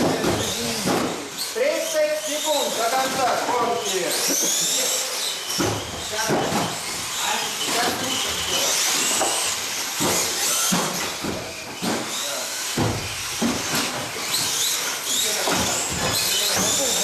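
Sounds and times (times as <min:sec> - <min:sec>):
scattered clicks and knocks: 0:00.0 - 0:01.2, 0:05.5 - 0:17.0
electric toy car motors whining: 0:00.0 - 0:17.0.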